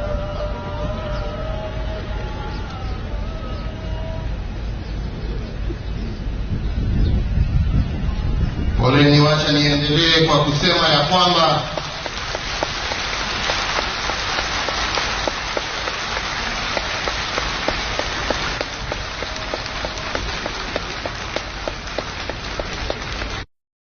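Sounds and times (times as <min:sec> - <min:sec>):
steady hiss: 0:11.1 - 0:23.4.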